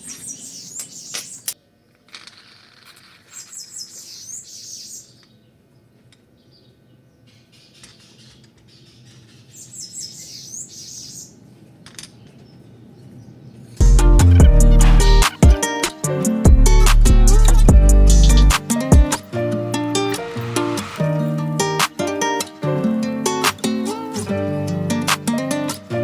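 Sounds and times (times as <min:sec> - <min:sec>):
small birds chirping: 0:00.0 - 0:02.0, 0:03.2 - 0:11.5, 0:12.1 - 0:22.6.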